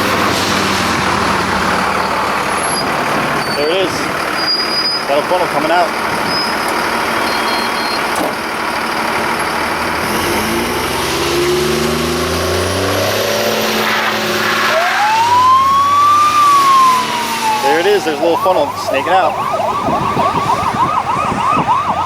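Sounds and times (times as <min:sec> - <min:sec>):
vehicle engine passing by: 0:00.0 - 0:03.4, 0:09.6 - 0:22.0
rushing wind and road noise: 0:00.0 - 0:07.3, 0:08.0 - 0:22.0
siren wailing: 0:13.1 - 0:22.0.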